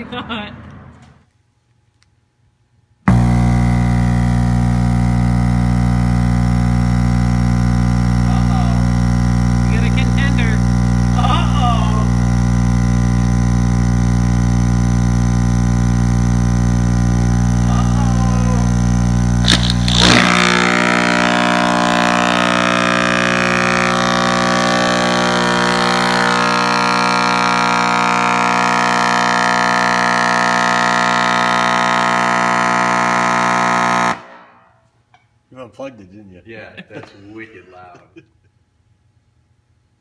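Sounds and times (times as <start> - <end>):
subwoofer humming and buzzing: 0.0 - 1.3, 2.2 - 35.5
crackling pops: 19.2 - 27.8.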